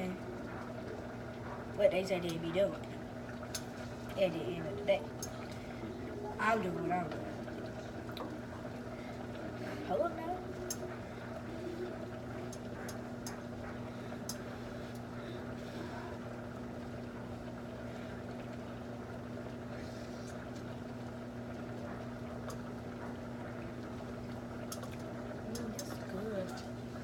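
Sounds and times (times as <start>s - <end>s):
faint clicks: 14.2s - 15.1s, 24.7s - 26.7s.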